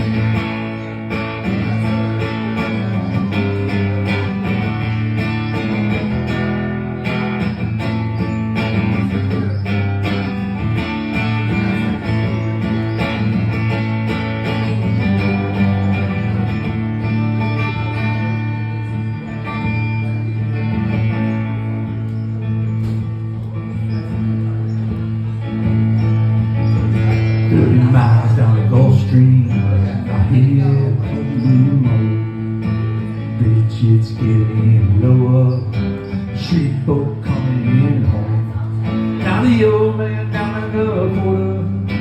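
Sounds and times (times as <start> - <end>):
band playing guitar instrumental: 0.0 - 42.0.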